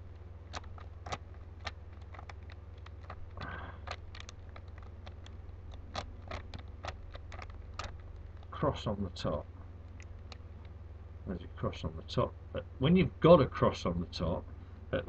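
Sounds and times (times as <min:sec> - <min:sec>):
low hum: 0:00.0 - 0:15.0
plastic puzzle cube clicking: 0:00.5 - 0:08.5.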